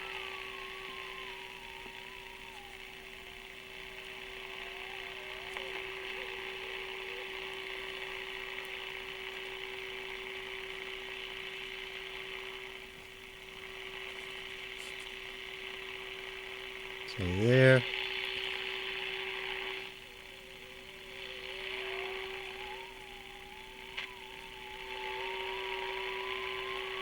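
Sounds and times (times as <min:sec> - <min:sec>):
radio test tone: 0:00.0 - 0:08.7, 0:17.0 - 0:27.0
radio hiss: 0:00.0 - 0:27.0.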